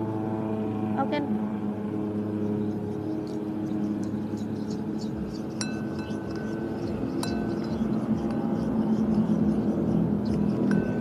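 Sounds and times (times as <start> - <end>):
low hum: 0.0 - 11.0
spoon stirring slime: 2.6 - 11.0
spoon clinking against bowl: 3.9 - 11.0.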